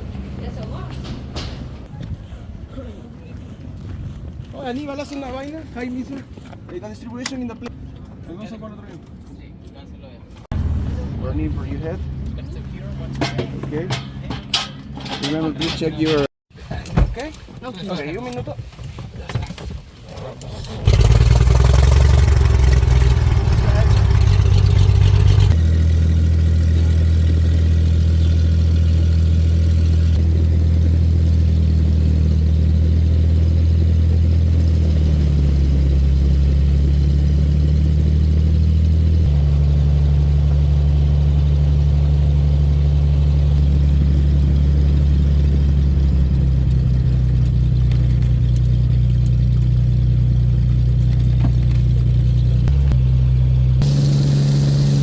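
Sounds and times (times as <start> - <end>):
propeller aircraft engine droning: 20.8 - 55.0.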